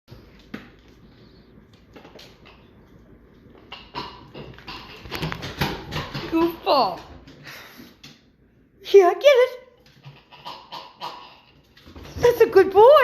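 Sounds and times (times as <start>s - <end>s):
dog hiccupping: 3.6s - 6.3s, 9.9s - 11.8s.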